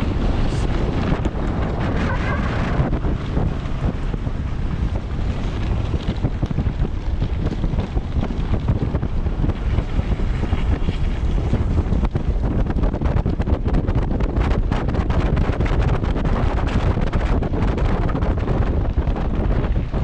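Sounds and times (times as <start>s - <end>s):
wind buffeting microphone: 0.0s - 20.0s.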